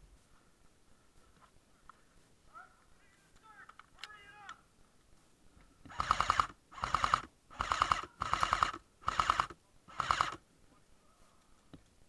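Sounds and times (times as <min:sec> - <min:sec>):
airsoft rifle full-auto bursts: 0:05.9 - 0:10.4.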